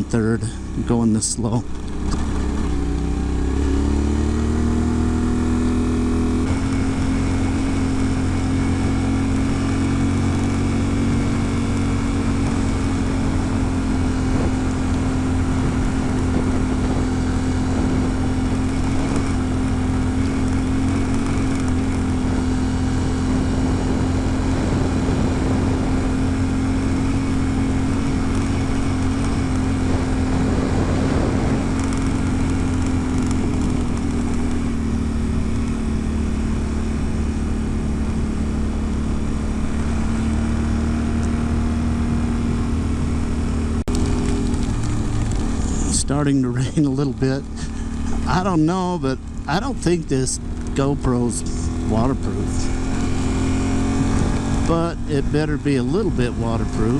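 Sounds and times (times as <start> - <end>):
motorcycle engine under load: 0.0 - 56.9
wind noise: 10.8 - 34.7, 52.4 - 56.9.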